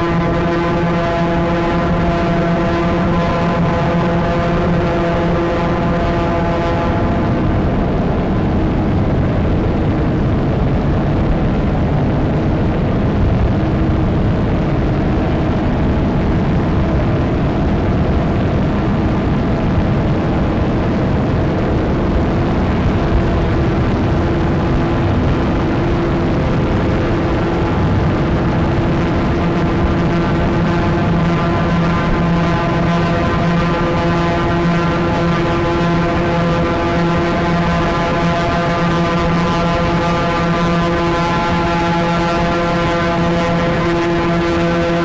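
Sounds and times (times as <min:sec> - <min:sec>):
dense distorted ambient drone: 0:00.0 - 0:45.0.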